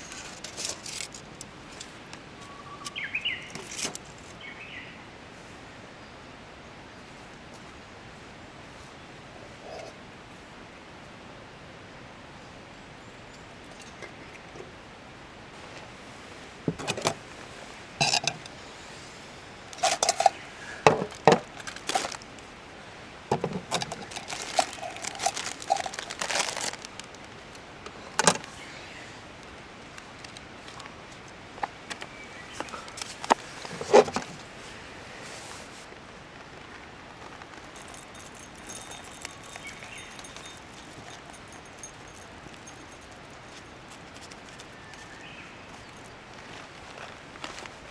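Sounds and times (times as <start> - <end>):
small hard objects clinking: 19.7 - 22.3, 23.3 - 27.4, 37.4 - 46.2.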